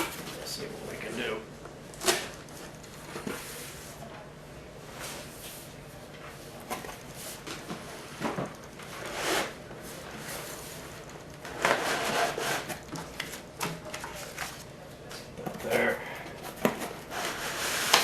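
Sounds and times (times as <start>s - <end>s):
cardboard boxes scraping: 9.0s - 9.6s, 11.5s - 12.8s, 16.5s - 18.0s.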